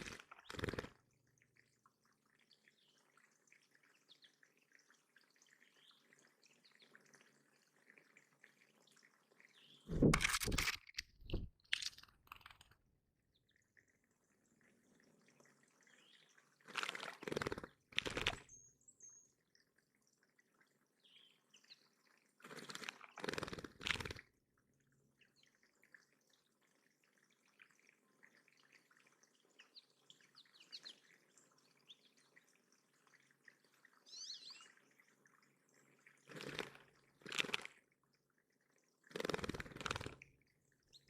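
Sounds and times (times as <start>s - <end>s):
faint birdsong: 0.0s - 10.1s, 13.2s - 23.6s, 25.0s - 36.6s
bird splashing water: 0.0s - 12.8s, 13.4s - 18.5s, 19.4s - 24.4s, 25.2s - 41.0s.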